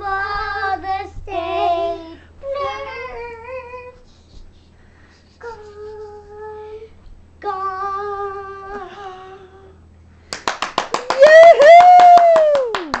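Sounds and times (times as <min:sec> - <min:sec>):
fast clapping: 0:10.3 - 0:13.0.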